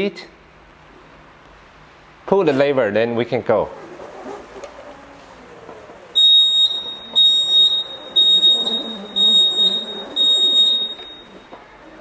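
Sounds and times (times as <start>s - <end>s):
mobility scooter beeper: 6.2s - 11.6s.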